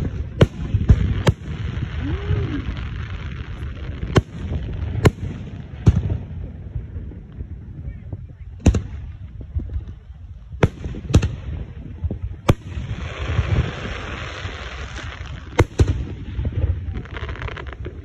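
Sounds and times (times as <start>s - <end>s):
fireworks hissing: 12.6s - 16.0s.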